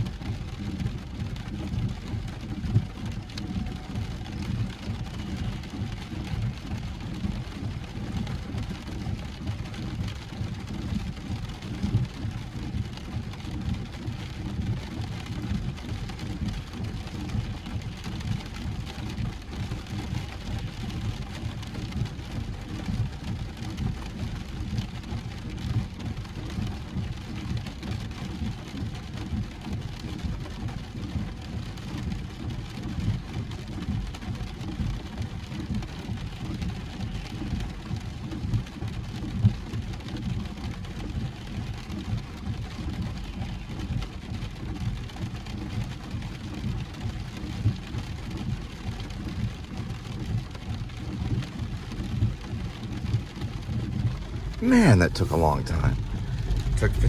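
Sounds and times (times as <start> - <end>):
car road rumble from inside: 52.0 - 57.0.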